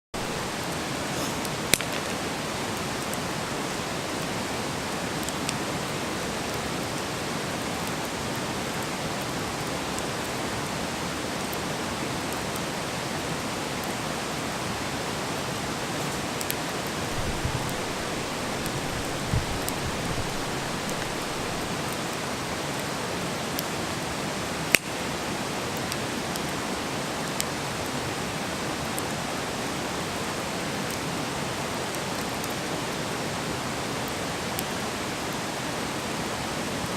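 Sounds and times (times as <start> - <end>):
fire crackles and pops: 0.2 - 10.0, 16.0 - 23.7, 24.6 - 25.1
wood fire burning: 0.2 - 10.4, 14.9 - 23.8
soft low thumps: 17.1 - 22.1.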